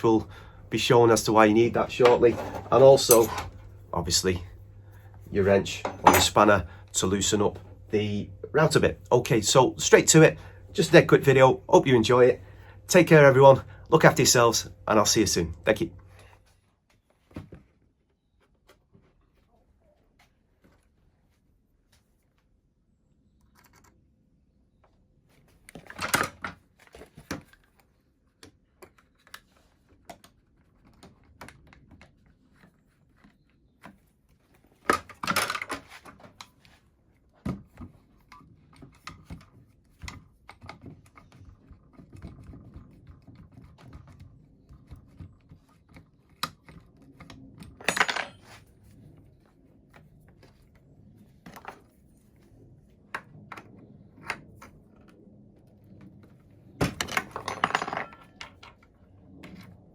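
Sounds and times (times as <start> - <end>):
metal tools clinking and clattering: 1.7 - 4.2, 5.3 - 6.7, 47.8 - 48.6, 56.9 - 58.6.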